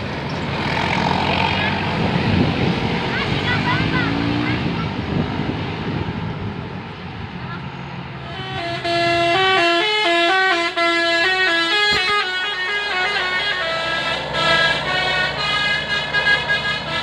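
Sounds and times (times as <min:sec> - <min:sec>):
bus engine humming: 0:00.0 - 0:17.0
bus horn melody: 0:08.2 - 0:17.0.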